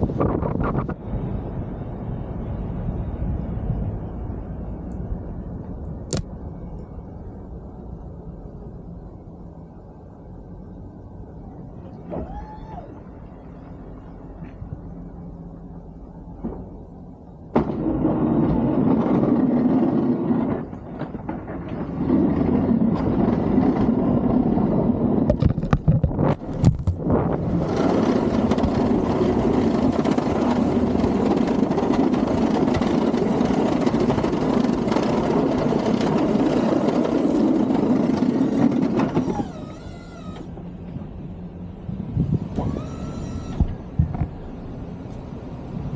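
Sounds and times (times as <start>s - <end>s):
snow plow engine running: 13.5s - 45.9s.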